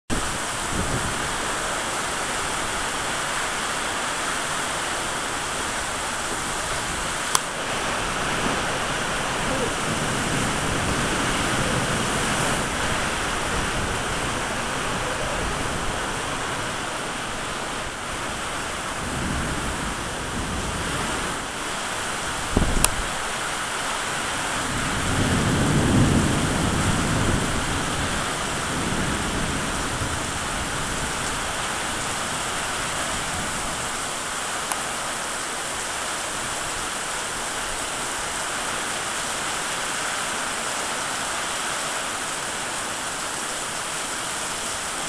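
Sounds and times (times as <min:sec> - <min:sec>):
surf: 0:00.1 - 0:25.2
rain: 0:00.1 - 0:45.0
wind: 0:00.1 - 0:45.0.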